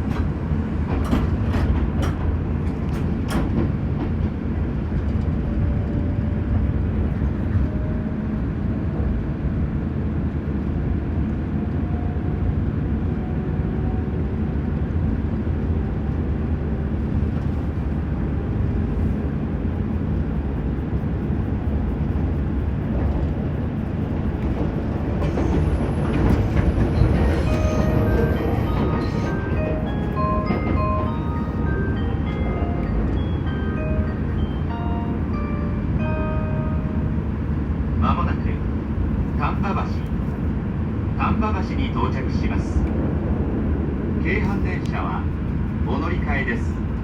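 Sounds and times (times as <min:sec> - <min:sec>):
train wheels rumbling: 0:00.0 - 0:11.3, 0:13.6 - 0:47.0
announcement chime: 0:26.8 - 0:37.0.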